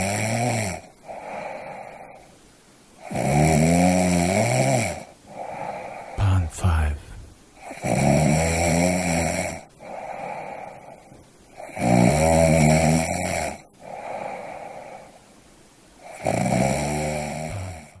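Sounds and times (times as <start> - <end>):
person snoring: 3.0 - 9.6, 16.1 - 18.0
soft breathing: 5.3 - 7.3, 9.8 - 11.3, 13.8 - 15.3.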